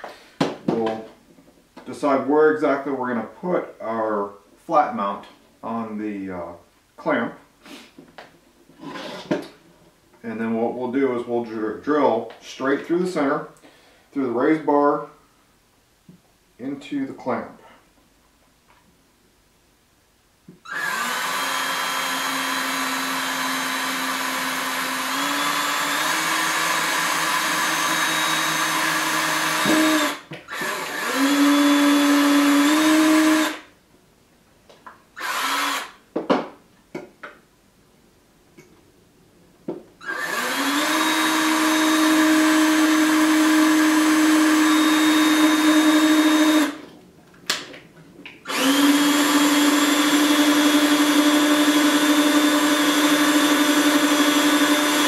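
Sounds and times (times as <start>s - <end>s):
electric drill motor whine: 20.6s - 33.6s, 35.2s - 36.0s, 40.0s - 46.8s, 48.5s - 55.0s.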